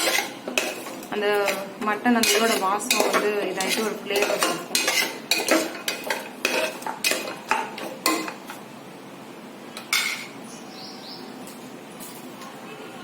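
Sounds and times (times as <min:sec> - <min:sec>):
metal spoon scraping metal pot: 0:00.0 - 0:08.4.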